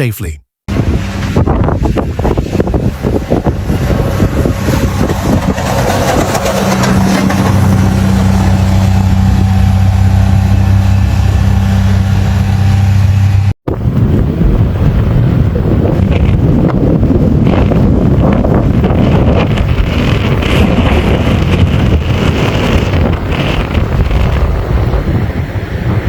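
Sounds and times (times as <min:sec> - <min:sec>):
vehicle engine humming: 0:00.7 - 0:13.6
wind on microphone: 0:00.7 - 0:26.0.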